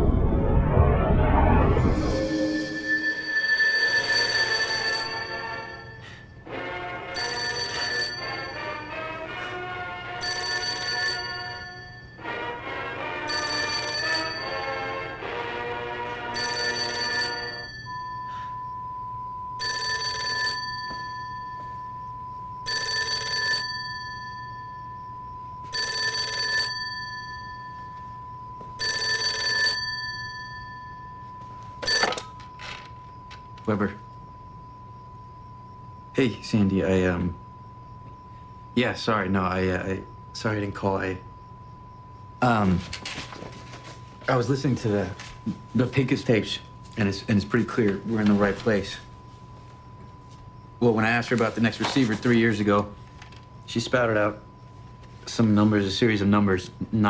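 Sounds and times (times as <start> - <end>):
steady high tone: 0.0 - 6.6, 16.6 - 20.1
music: 1.8 - 3.5, 5.3 - 7.2, 8.2 - 10.4, 12.2 - 16.5
telephone ringing: 2.2 - 9.2, 9.8 - 36.1
phone being picked up: 31.8 - 33.5.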